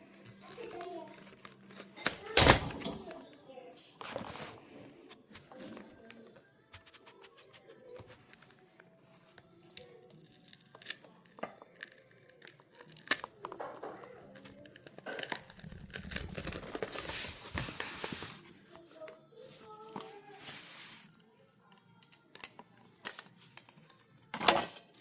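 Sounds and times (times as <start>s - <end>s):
tearing and crinkling: 8.1s - 21.3s.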